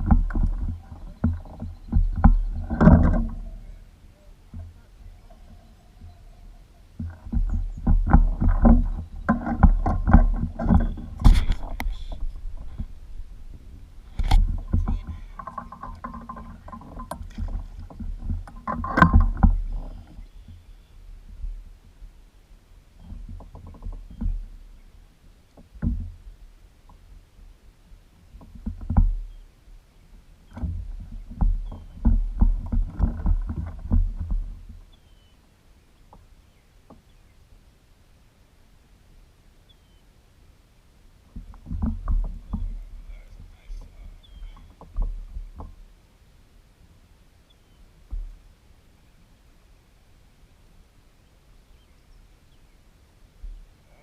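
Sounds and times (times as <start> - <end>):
knocks against a boat: 0.0 - 3.6, 7.0 - 20.1, 25.6 - 26.2, 28.4 - 29.3, 30.5 - 34.8, 41.3 - 45.8, 48.1 - 48.4
steady low rumble: 0.0 - 18.6.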